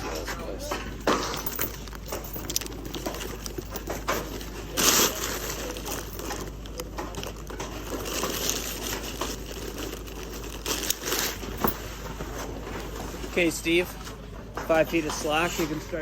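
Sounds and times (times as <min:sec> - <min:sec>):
chains and hooks clinking: 0:00.4 - 0:09.2, 0:10.2 - 0:11.9
lifting bag rustling: 0:00.7 - 0:13.8.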